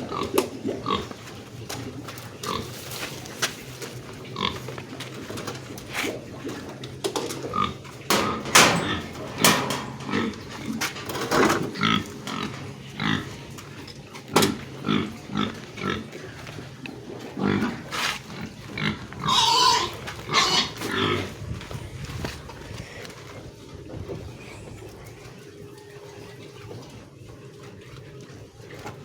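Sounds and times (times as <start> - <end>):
young pigs grunting: 0.0 - 3.2, 4.0 - 21.5
high-pitched pig call: 19.2 - 21.2.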